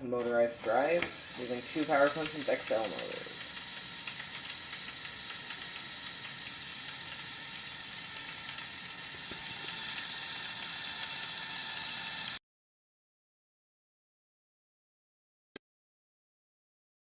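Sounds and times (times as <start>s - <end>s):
motors whirring plastic gears: 0.5s - 12.4s.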